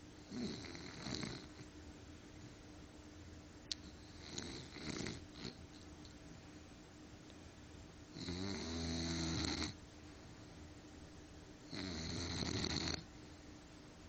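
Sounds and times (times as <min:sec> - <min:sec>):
dog snoring: 0:00.3 - 0:01.6, 0:03.8 - 0:05.6, 0:08.1 - 0:09.8, 0:11.7 - 0:13.0.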